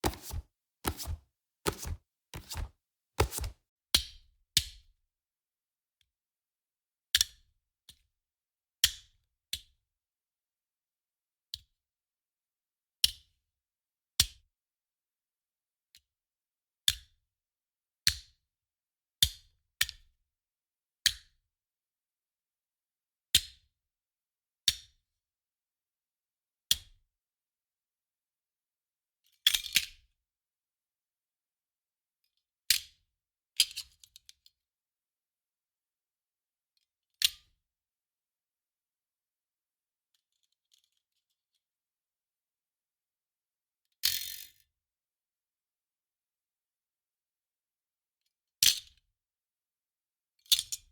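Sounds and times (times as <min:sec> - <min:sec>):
brief sharp throw sounds: 0:00.0 - 0:03.5.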